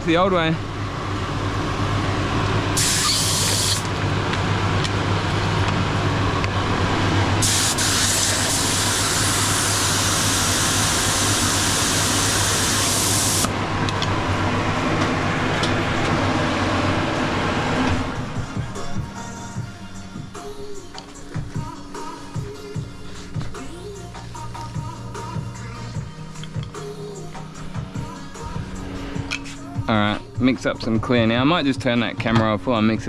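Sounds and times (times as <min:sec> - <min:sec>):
steady hum: 0:00.0 - 0:33.0
spray gun hissing: 0:02.8 - 0:03.9, 0:07.4 - 0:13.5.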